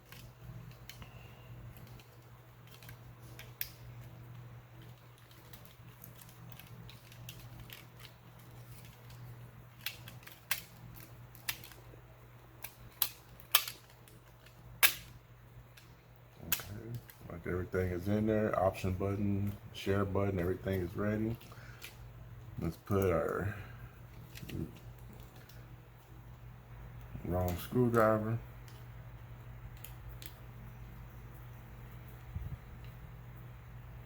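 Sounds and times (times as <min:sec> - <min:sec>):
plastic clicks and snaps: 0:00.0 - 0:11.8, 0:12.6 - 0:17.2, 0:29.7 - 0:30.4
steady low hum: 0:00.0 - 0:34.0.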